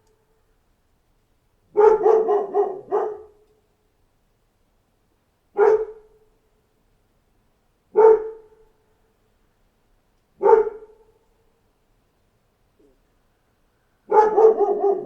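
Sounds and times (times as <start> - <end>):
dog barking: 1.7 - 3.4, 5.6 - 6.2, 7.9 - 8.7, 10.4 - 11.1, 14.1 - 15.0.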